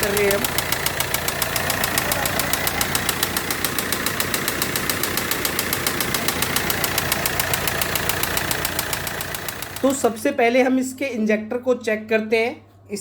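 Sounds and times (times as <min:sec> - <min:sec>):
diesel engine with rapid knock: 0:00.0 - 0:10.2.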